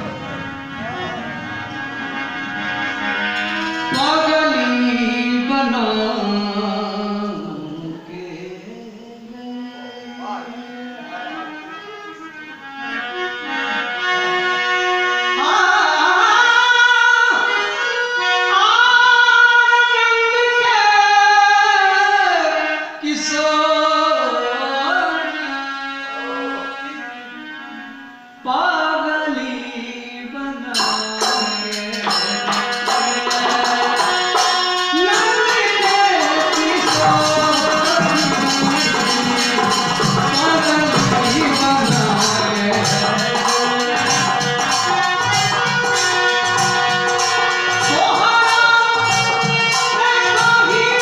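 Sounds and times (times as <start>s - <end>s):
instrumental accompaniment: 0.0s - 51.0s
person singing folk song: 3.3s - 12.5s, 15.3s - 51.0s
fast percussion beat: 30.8s - 51.0s.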